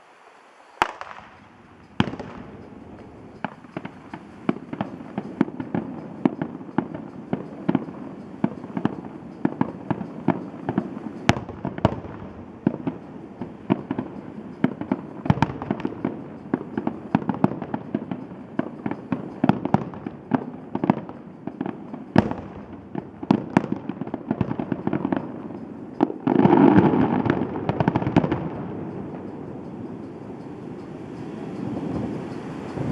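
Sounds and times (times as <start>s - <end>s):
fireworks bursting and crackling: 0.0s - 32.9s.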